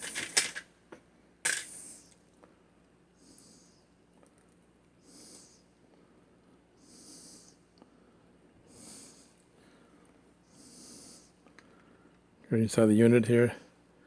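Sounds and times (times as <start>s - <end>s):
nose breathing: 5.0s - 5.6s, 6.8s - 7.6s, 8.7s - 12.0s.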